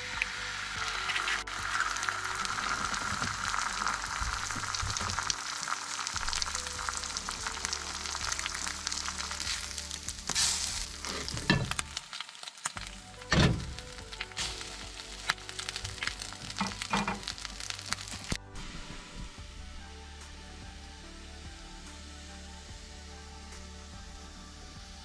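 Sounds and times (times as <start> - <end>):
food sizzling in a pan: 0.0 - 18.4.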